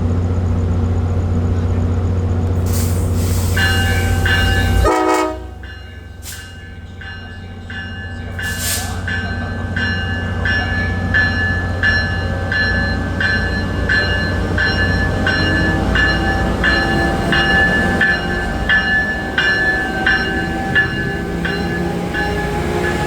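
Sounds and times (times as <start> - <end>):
diesel locomotive rumble: 0.0 - 23.0
train bell striking: 3.4 - 23.0.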